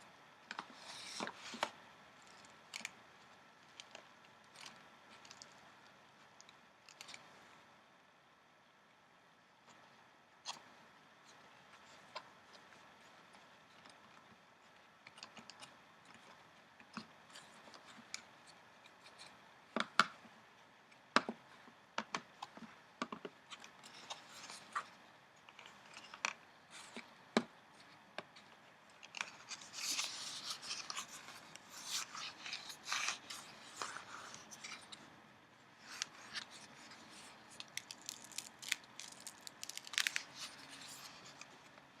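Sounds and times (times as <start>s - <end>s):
paper crinkling and rustling: 28.9s - 35.0s, 35.8s - 41.8s.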